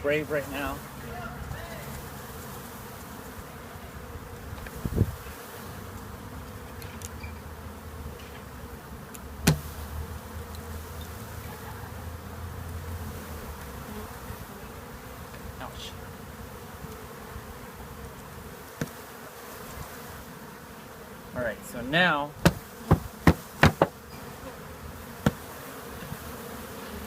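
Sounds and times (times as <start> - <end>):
bees buzzing: 0.0 - 27.0
sharp knocks: 9.4 - 9.7, 22.4 - 24.0.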